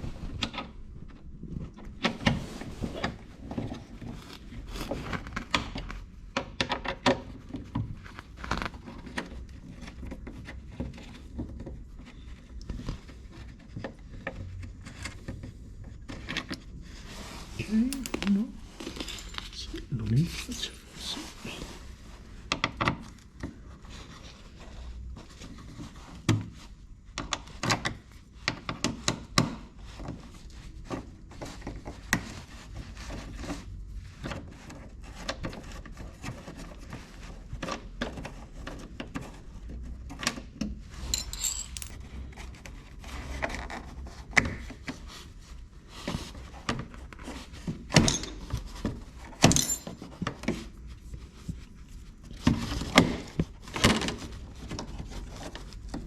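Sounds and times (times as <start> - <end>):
hand tools clicking and clinking: 17.7 - 19.6, 41.1 - 42.0, 49.4 - 50.1.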